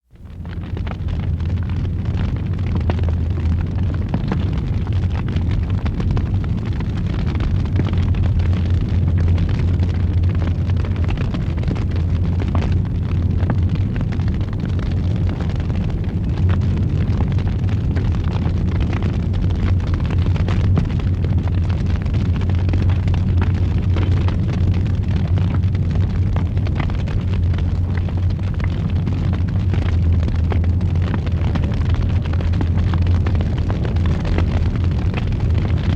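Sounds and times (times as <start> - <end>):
fire roaring: 0.1 - 35.9
wood crackling and popping: 0.2 - 35.9.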